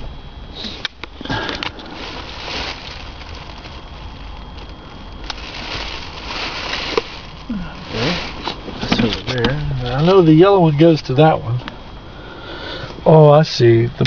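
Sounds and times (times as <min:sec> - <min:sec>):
rustling handling noise: 0:00.6 - 0:11.7.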